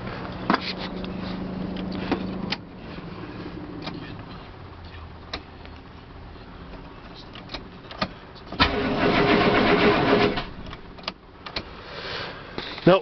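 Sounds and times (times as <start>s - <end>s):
starter motor cranking engine: 8.6s - 10.8s.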